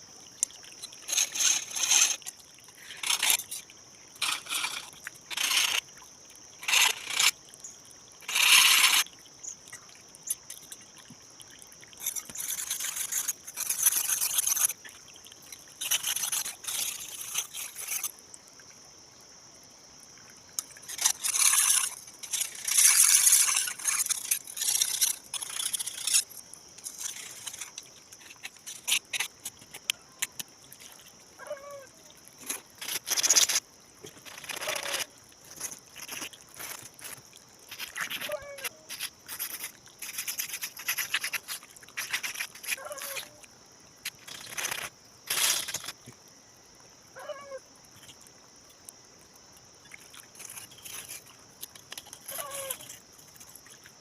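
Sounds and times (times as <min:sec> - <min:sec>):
scraping rust off a blade: 0:02.9 - 0:03.5, 0:08.3 - 0:09.0, 0:20.9 - 0:26.2.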